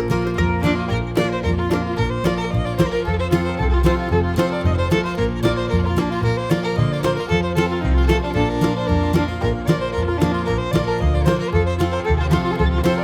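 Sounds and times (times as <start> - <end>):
upbeat fiddle and guitar music: 0.0 - 13.0.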